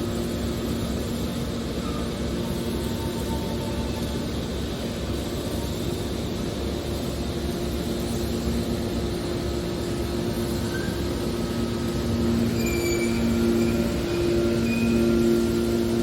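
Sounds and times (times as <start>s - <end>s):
baler machine hum: 0.0s - 16.0s
faint high squeal: 1.7s - 4.3s, 10.5s - 16.0s.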